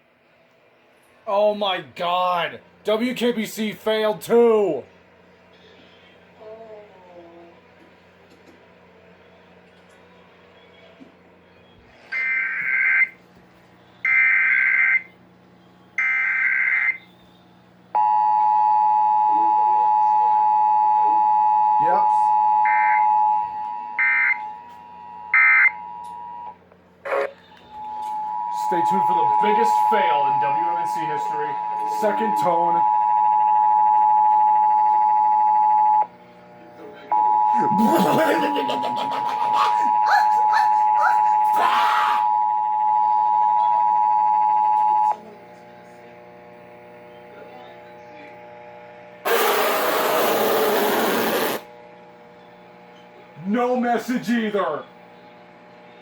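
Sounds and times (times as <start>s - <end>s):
loud static hiss: 49.2s - 51.7s
noise burst: 49.3s - 51.7s.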